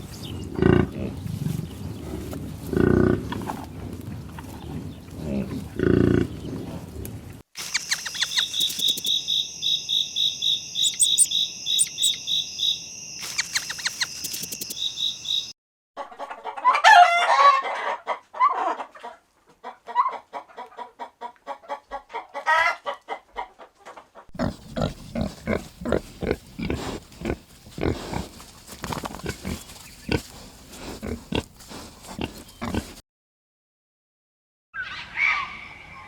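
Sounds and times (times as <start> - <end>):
chickens clucking: 10.8 - 12.2, 16.0 - 30.4.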